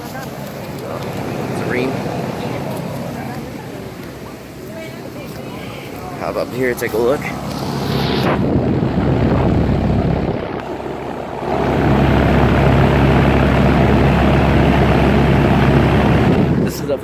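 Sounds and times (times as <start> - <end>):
air conditioner fan rushing: 0.0 - 17.0
low hum: 0.0 - 17.0.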